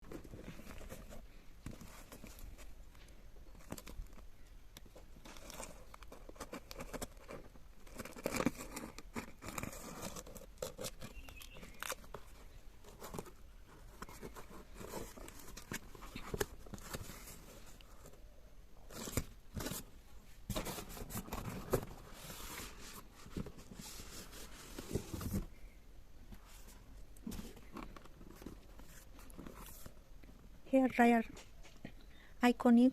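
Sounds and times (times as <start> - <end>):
packaging rustling and tearing: 4.9 - 18.2, 18.8 - 19.9.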